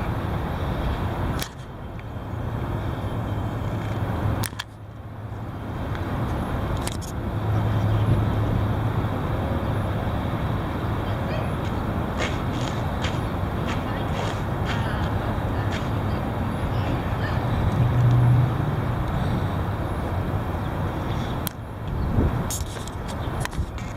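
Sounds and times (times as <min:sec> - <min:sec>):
wind buffeting microphone: 0:05.6 - 0:23.9.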